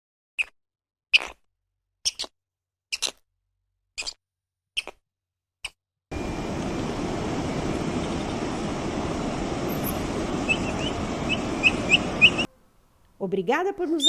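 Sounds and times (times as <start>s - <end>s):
steady rushing noise: 6.1s - 12.5s.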